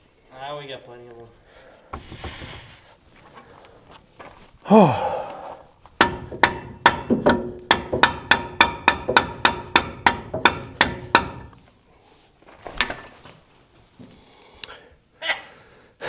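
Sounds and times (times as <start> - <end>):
mallet hammering on metal: 6.0 - 11.6.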